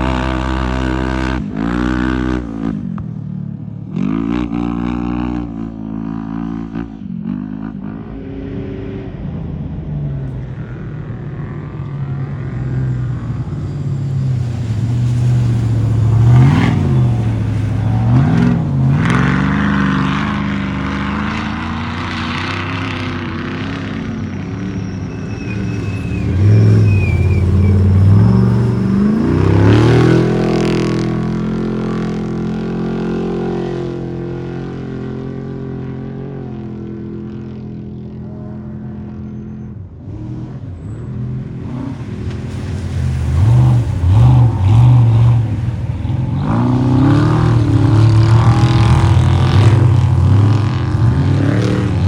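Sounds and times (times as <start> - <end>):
engine revving: 0.0 - 3.0, 12.4 - 37.4, 41.3 - 52.0
engine approaching: 0.0 - 52.0.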